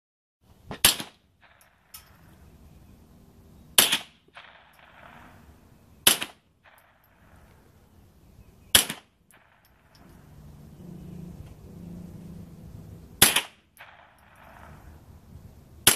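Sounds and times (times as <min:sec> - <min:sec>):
rifle shots: 0:00.7 - 0:02.3, 0:03.8 - 0:07.5, 0:08.7 - 0:10.1, 0:13.2 - 0:15.0.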